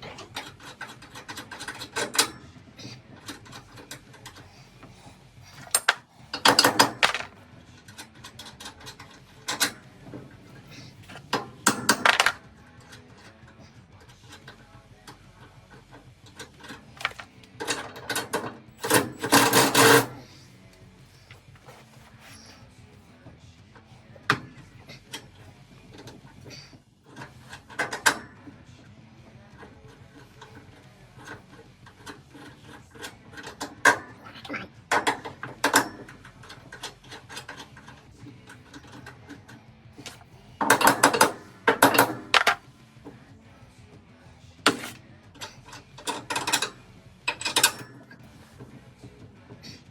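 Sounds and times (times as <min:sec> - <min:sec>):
metal tools knocking: 0:05.5 - 0:10.3, 0:11.1 - 0:12.4, 0:16.4 - 0:20.2, 0:34.9 - 0:37.8, 0:40.0 - 0:42.6, 0:44.7 - 0:48.3
ratchet wrench clicking: 0:16.3 - 0:20.2.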